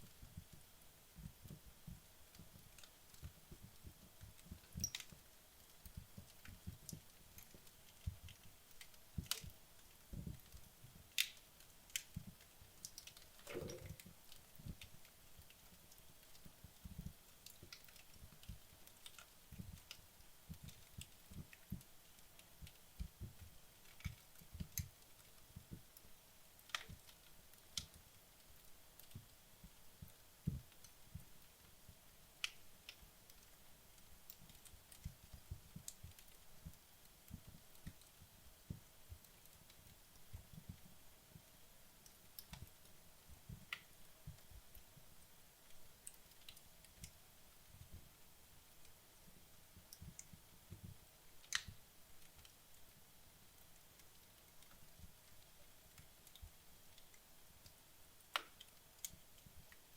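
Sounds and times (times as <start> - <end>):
wood fire crackling and popping: 0.0 - 59.9.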